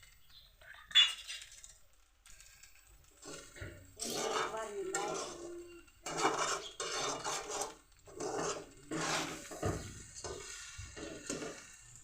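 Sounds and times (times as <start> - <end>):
spoon scraping rice in a pot: 3.2 - 12.0.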